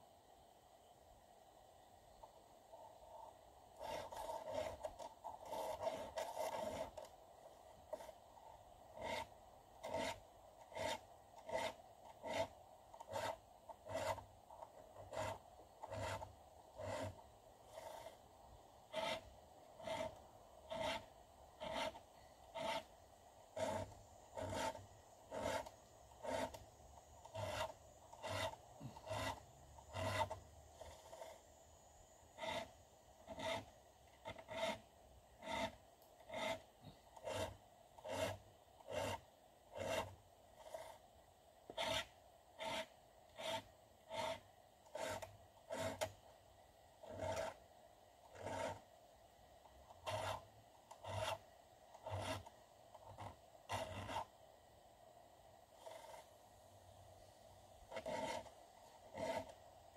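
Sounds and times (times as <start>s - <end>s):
file rasping on chainsaw chain: 3.8s - 7.1s, 8.9s - 18.2s, 18.9s - 22.9s, 23.6s - 26.6s, 27.2s - 31.4s, 32.4s - 36.6s, 37.2s - 39.2s, 39.8s - 41.0s, 41.8s - 46.1s, 47.1s - 47.6s, 48.3s - 48.8s, 50.0s - 51.4s, 52.0s - 52.5s, 57.9s - 59.6s.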